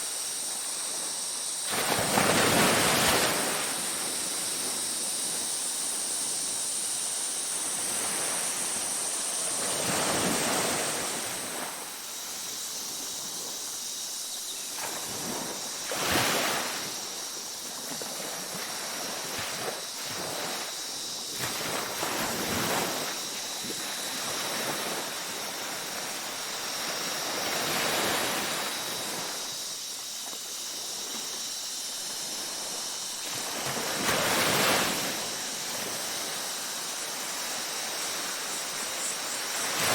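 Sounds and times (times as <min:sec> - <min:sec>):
ocean waves breaking: 0:00.9 - 0:04.8, 0:07.7 - 0:12.0, 0:14.8 - 0:29.5, 0:32.2 - 0:39.9.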